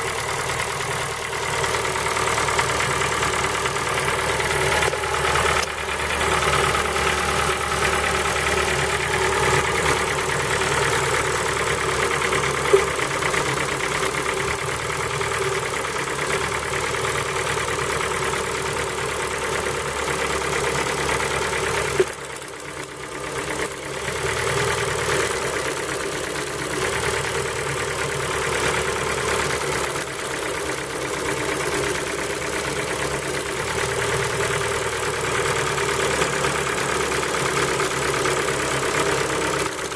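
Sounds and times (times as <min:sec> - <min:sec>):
car engine idling with knock: 0:00.0 - 0:39.9.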